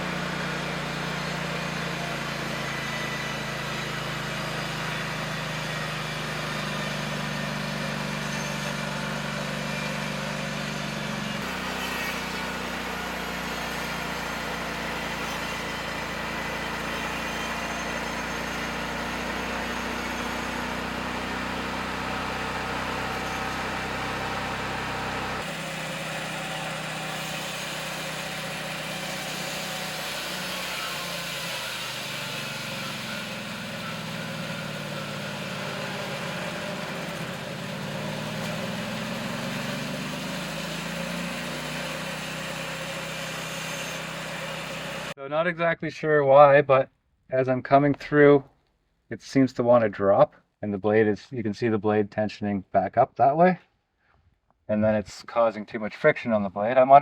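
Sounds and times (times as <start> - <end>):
gasoline engine running: 0.0 - 45.2
sawmill cutting: 0.0 - 45.2.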